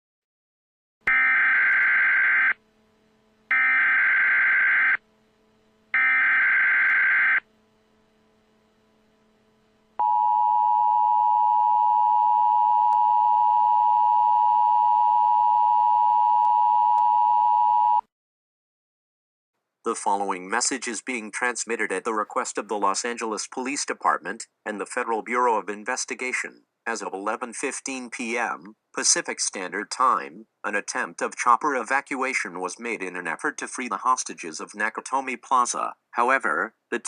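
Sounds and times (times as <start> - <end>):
buzzing digital data bursts: 3.5 - 5.0, 6.0 - 7.4
two-tone attention signal: 10.0 - 18.0.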